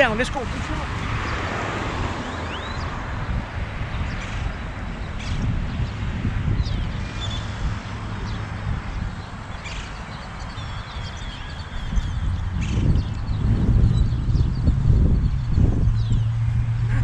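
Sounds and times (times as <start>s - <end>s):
wind: 0.0s - 17.0s.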